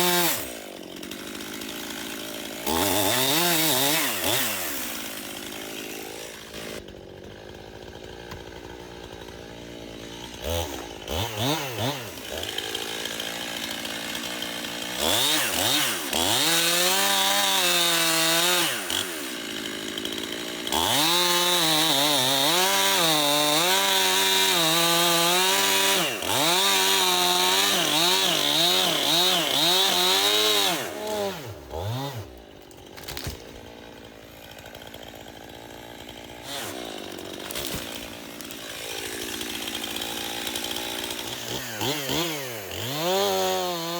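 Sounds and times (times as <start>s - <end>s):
chainsaw idling and cutting wood: 0.0s - 43.9s.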